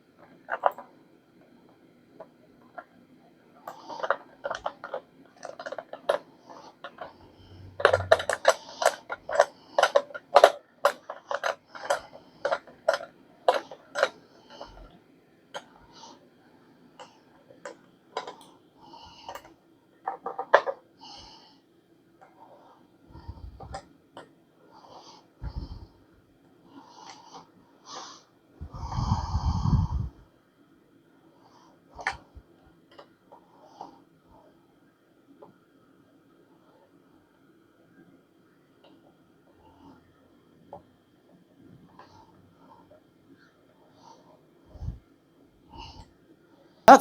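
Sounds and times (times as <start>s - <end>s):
metal parts clinking and clanking: 7.8s - 12.0s.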